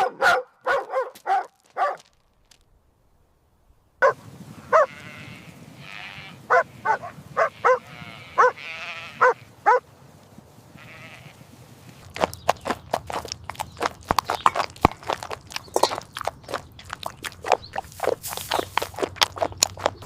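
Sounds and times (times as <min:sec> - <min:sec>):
sheep bleating: 0:04.6 - 0:09.5, 0:10.8 - 0:11.4.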